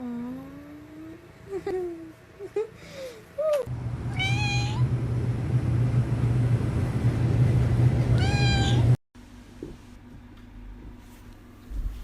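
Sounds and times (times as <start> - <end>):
loud low hum: 3.7 - 9.0
cat meowing: 4.1 - 4.8, 8.1 - 8.9.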